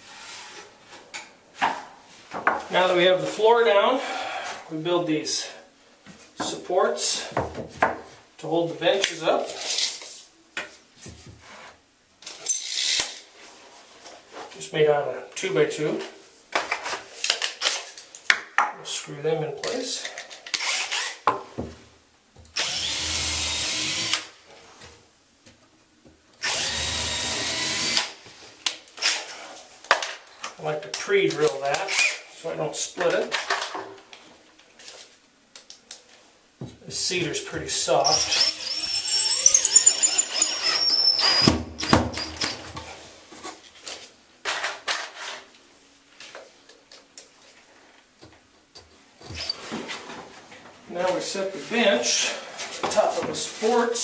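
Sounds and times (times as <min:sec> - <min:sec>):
power drill drilling wood: 0:22.6 - 0:24.3, 0:26.4 - 0:28.1, 0:38.1 - 0:42.5.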